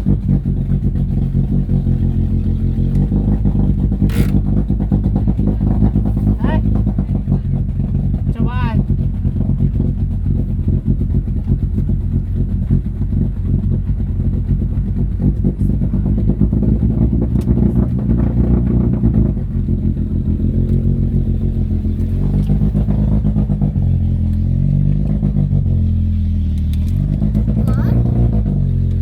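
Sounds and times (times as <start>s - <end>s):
engine running with rough clatter: 0.0s - 29.0s.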